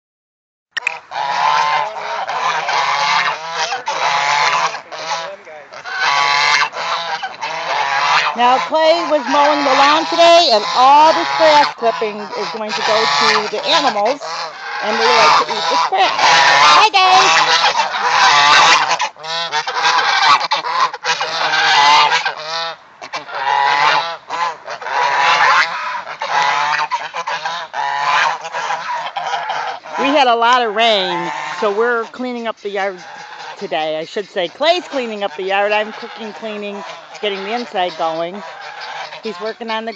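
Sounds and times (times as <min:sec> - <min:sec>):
geese honking: 0:00.8 - 0:39.9.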